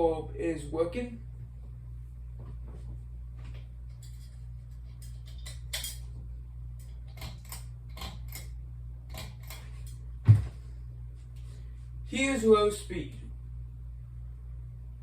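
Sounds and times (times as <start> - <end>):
steady low hum: 0.0 - 15.0
light sharp clicks and clinks: 3.9 - 6.1.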